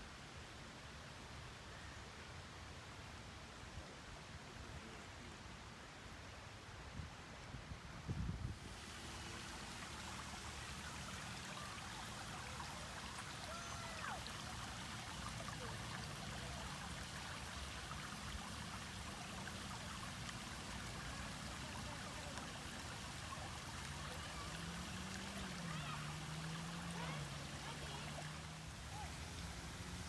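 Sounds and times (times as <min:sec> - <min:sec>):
stream water rushing: 0:08.5 - 0:30.0.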